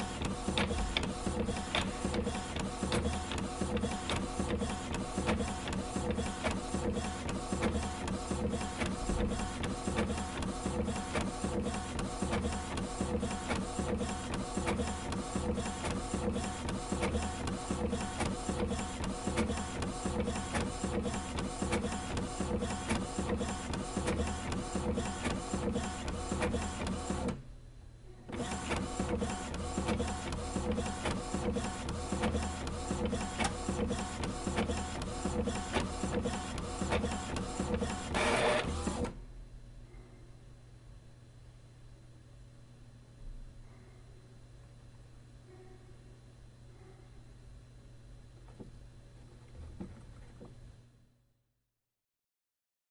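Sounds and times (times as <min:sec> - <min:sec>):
machine humming and clattering: 0:00.0 - 0:27.4.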